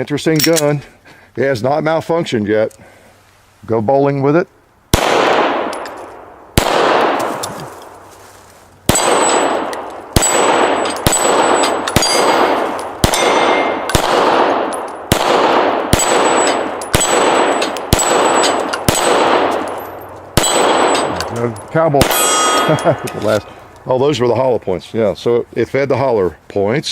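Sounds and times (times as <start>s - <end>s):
pistol shots echoing: 4.9s - 7.5s, 8.9s - 23.3s
metallic ring of struck steel: 9.0s - 13.9s, 19.6s - 23.5s.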